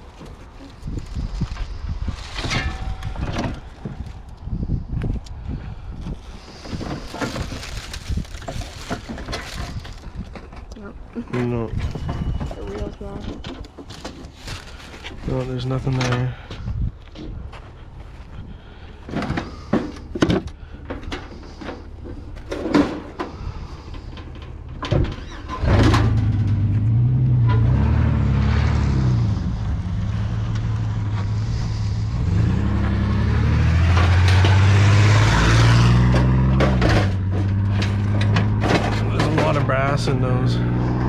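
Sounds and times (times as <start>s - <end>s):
knocks and clatters: 19.0s - 26.9s, 33.7s - 40.1s
car engine driving off: 21.5s - 41.0s.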